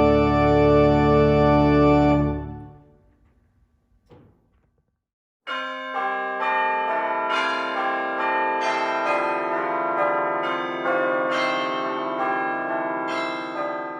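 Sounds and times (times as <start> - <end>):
church bells ringing: 0.0 - 2.8, 5.5 - 13.9.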